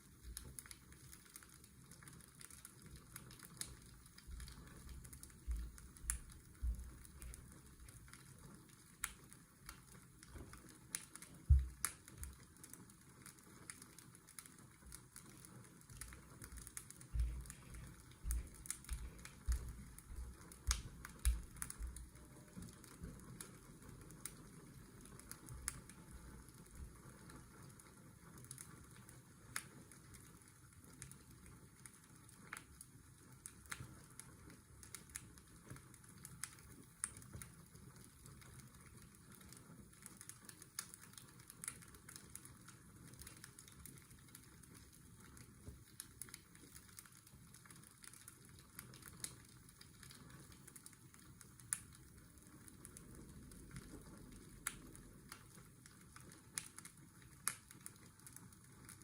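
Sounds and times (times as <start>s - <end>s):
white noise hiss: 0.0s - 47.2s, 47.8s - 59.0s
fireplace crackling: 0.0s - 59.0s.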